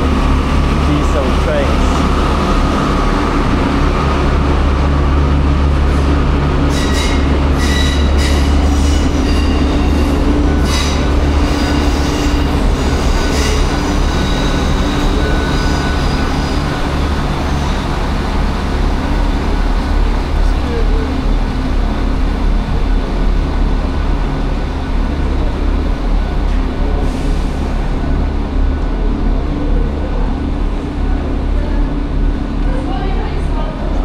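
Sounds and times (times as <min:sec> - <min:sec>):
diesel train engine humming: 0:00.0 - 0:34.0
metallic squeals of train wheels: 0:06.6 - 0:17.8.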